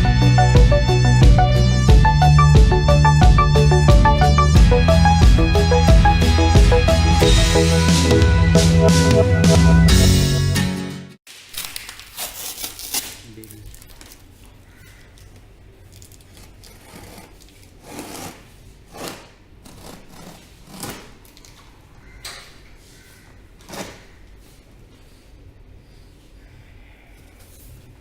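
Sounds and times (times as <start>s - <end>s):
packaging rustling and crinkling: 11.3s - 18.3s.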